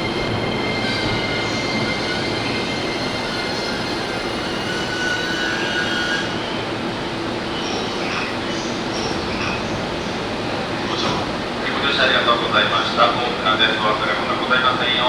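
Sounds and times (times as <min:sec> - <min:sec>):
train rolling rumble: 0:00.0 - 0:15.0.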